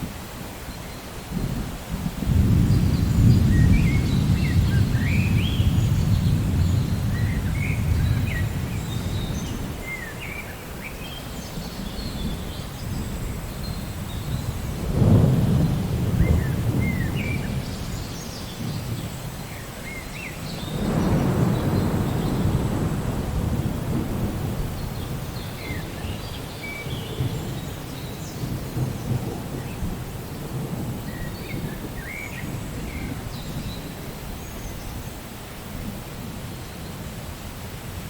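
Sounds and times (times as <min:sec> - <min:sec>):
steady rain: 0:00.0 - 0:38.0
thunder rumbling: 0:01.4 - 0:09.8, 0:13.7 - 0:18.0, 0:20.7 - 0:34.0.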